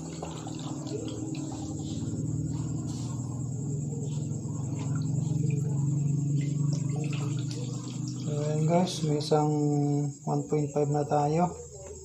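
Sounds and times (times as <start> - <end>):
liquid pouring through strainer: 0.0 - 9.3
steady low hum: 0.0 - 12.0.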